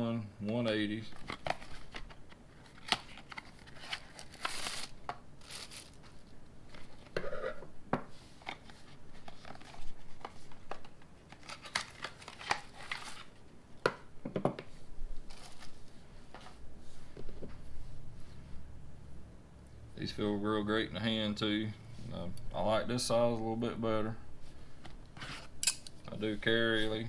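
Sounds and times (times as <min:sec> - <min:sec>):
packaging crinkling: 0:01.1 - 0:07.2, 0:08.4 - 0:13.4.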